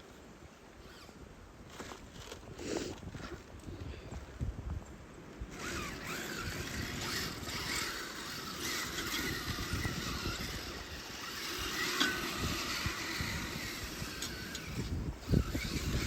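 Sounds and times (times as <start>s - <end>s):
small electric motor whining: 0.8s - 2.0s, 5.5s - 16.0s.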